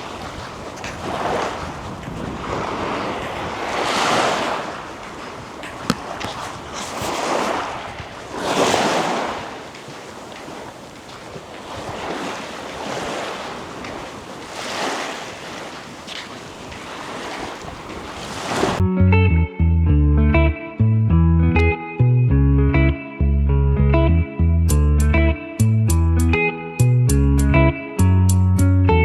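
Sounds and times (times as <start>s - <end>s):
ocean waves breaking: 0.0s - 18.8s
wind on microphone: 0.0s - 18.8s.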